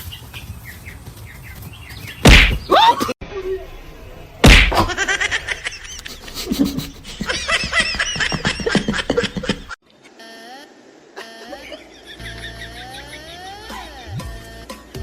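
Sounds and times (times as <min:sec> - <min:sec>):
person laughing hard: 0:04.7 - 0:09.8, 0:11.2 - 0:14.2.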